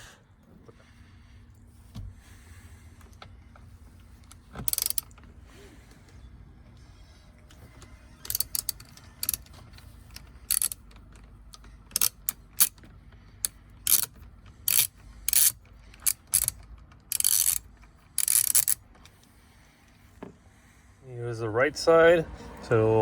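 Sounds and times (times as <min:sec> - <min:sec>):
socket ratchet clicking: 0:04.2 - 0:05.2, 0:08.2 - 0:19.2.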